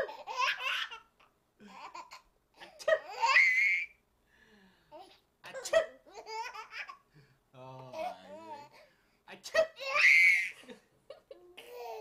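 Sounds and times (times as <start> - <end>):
baby laughing: 0.0 - 3.8, 5.7 - 7.0.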